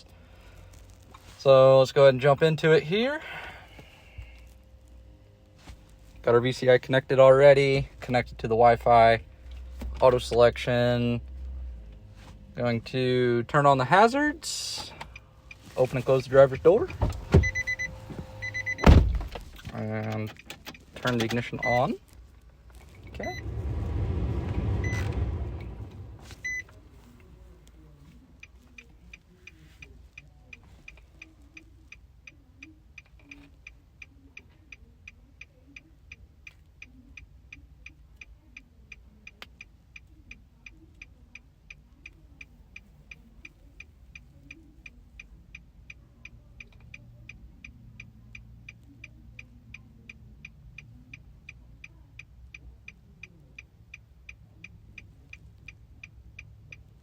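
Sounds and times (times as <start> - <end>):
short electronic beep: 17.4 - 19.0, 23.0 - 23.6, 24.7 - 26.7.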